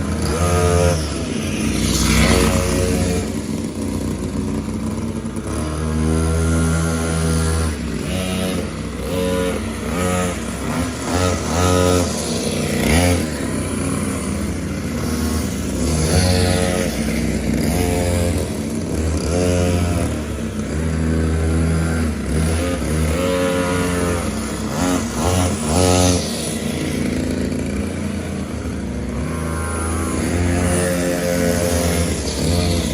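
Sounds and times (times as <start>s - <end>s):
mini motorbike engine revving: 0.0s - 32.9s.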